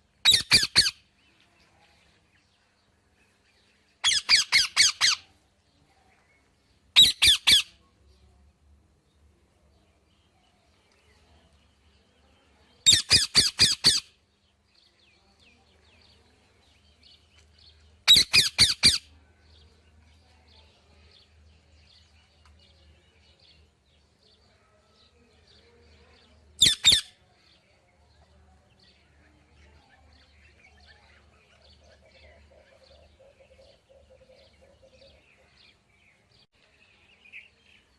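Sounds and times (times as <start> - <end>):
parrot squawking: 0.3 - 1.0, 4.0 - 5.2, 7.0 - 7.7, 18.1 - 19.0.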